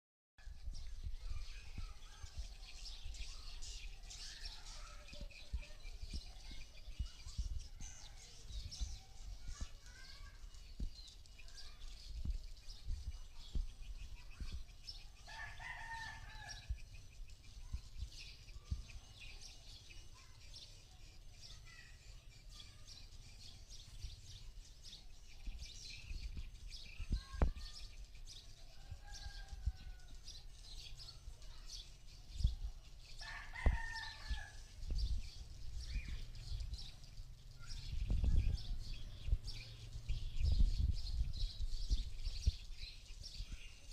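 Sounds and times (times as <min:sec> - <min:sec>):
high chirping of swiftlets: 0:00.5 - 0:43.9
rooster crowing: 0:33.2 - 0:34.5.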